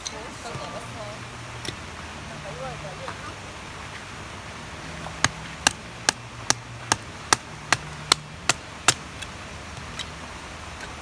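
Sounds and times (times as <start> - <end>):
sharp hammering strikes: 5.2 - 9.2.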